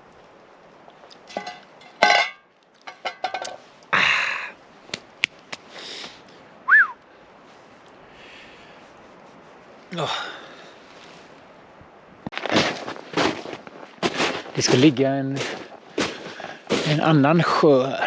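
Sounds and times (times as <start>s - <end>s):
metal cookware clinking: 1.3s - 3.6s.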